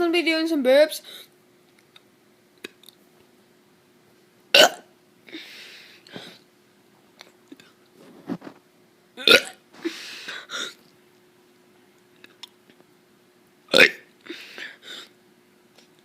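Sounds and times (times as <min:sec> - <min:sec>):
child burping: 0:04.6 - 0:04.9, 0:09.2 - 0:09.6, 0:13.7 - 0:14.1
breathy air noise: 0:05.2 - 0:06.5.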